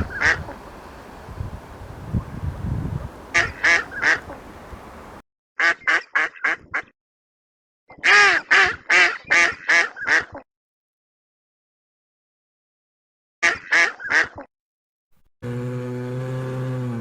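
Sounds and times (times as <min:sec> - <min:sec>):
duck quacking: 0:00.0 - 0:06.8, 0:08.0 - 0:10.4, 0:13.4 - 0:14.5.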